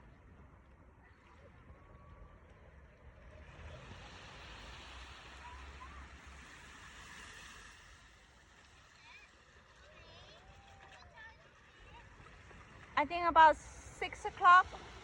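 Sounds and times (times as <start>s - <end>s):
sea wave washing up beach: 3.4s - 15.0s.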